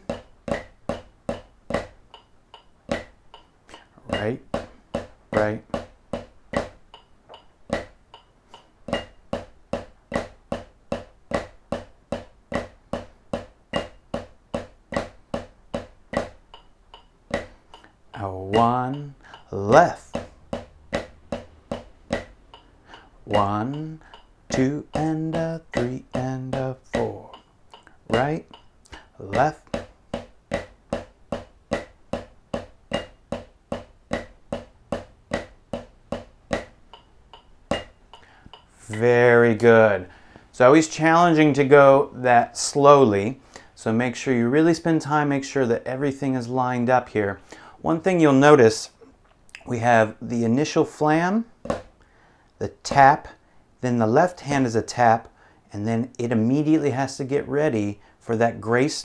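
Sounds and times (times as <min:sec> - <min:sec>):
snare drum triplet strokes: 0:17.4 - 0:27.4, 0:28.1 - 0:36.8.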